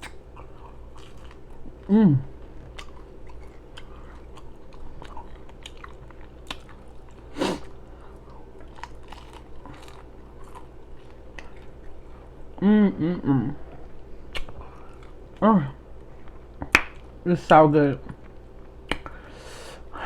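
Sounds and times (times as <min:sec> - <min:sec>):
person chewing with wet smacking: 0:00.0 - 0:12.6, 0:13.6 - 0:15.4.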